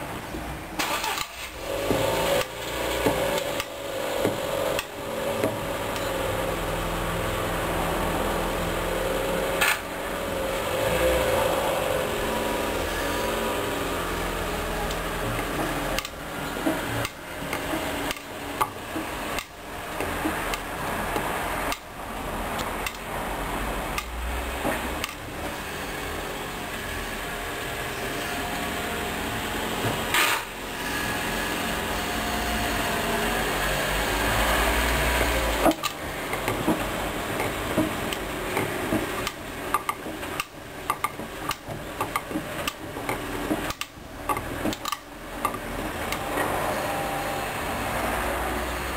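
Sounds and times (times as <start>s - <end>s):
motor hum: 1.4s - 48.9s
laundry knocking in washing machine: 36.4s - 43.8s.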